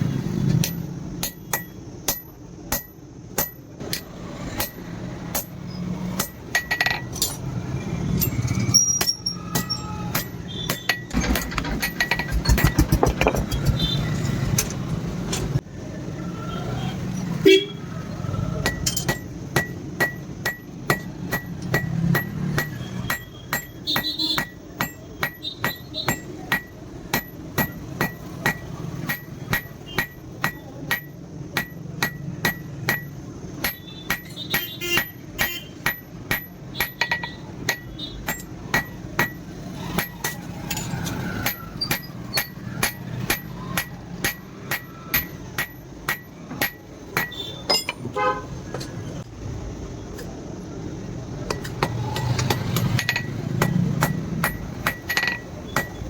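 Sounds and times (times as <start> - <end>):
hammer ringing on anvil: 0.6 - 5.6, 9.0 - 11.1, 18.6 - 48.1, 52.8 - 56.0.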